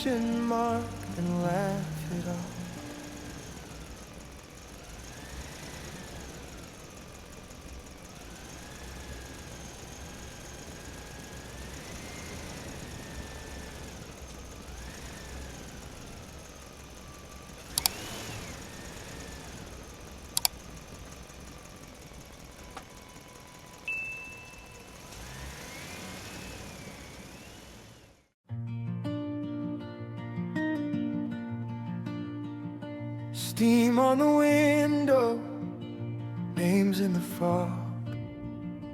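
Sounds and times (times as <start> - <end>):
small electric motors whining: 0.0 - 28.4
sharp clicks: 17.7 - 18.4, 20.2 - 21.1.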